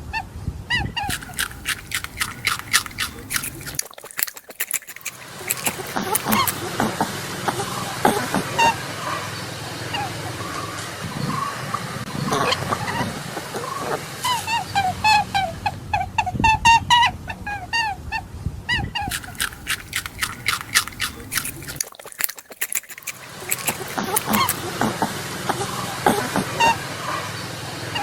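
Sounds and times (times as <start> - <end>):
animal chirping calls: 1.0 - 6.6, 19.0 - 24.7
rabbit chewing clicks: 1.0 - 6.6, 19.0 - 24.7.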